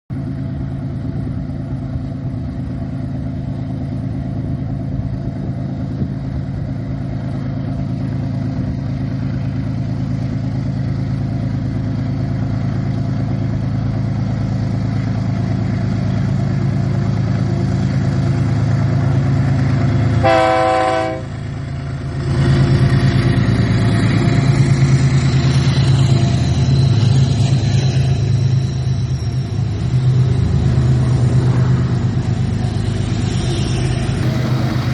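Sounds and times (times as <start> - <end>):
diesel locomotive drone: 0.1 - 34.9
locomotive horn blast: 20.2 - 21.4.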